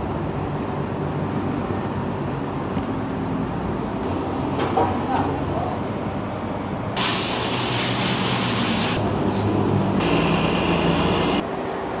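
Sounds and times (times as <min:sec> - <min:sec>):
loud hiss: 0:07.0 - 0:11.4.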